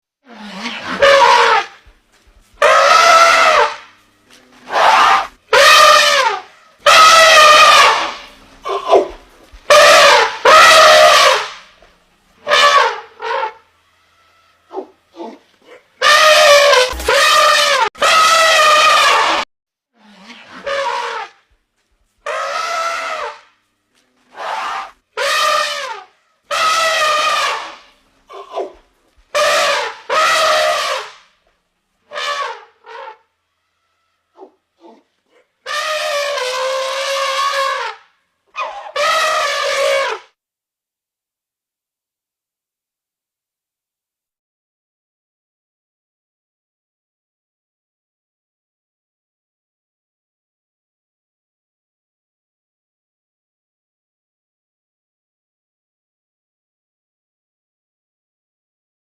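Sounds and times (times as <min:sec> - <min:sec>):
elephant trumpeting: 0:00.2 - 0:01.9, 0:02.5 - 0:11.8, 0:12.4 - 0:19.4, 0:20.0 - 0:21.4, 0:22.2 - 0:23.5, 0:24.2 - 0:31.3, 0:32.0 - 0:40.3.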